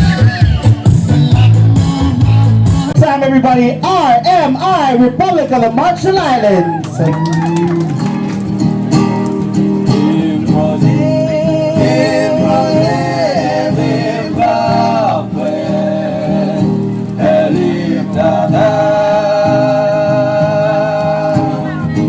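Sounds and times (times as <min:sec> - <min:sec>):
choir singing in harmony: 0:10.0 - 0:22.0.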